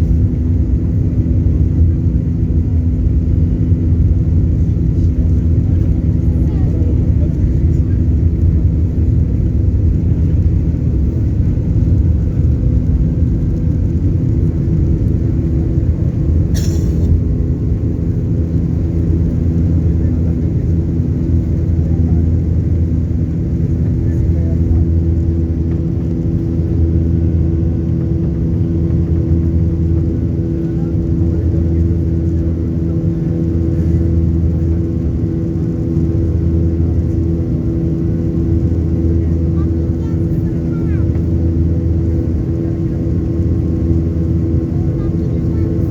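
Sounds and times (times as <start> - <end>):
jet engine cabin drone: 0.0 - 45.9.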